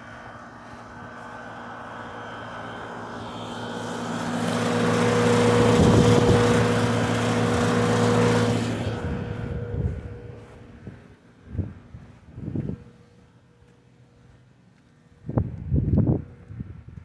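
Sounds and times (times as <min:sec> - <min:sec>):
motor drone with whine: 0:00.0 - 0:12.8.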